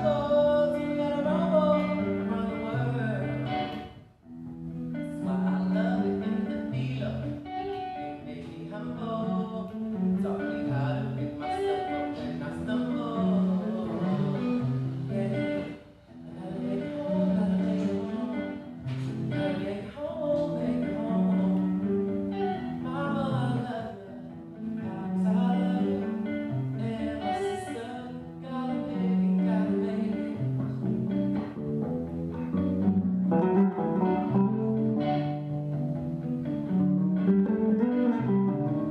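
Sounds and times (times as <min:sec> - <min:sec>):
person singing: 0:00.0 - 0:04.0, 0:05.0 - 0:31.6
plucked guitar: 0:00.0 - 0:38.9.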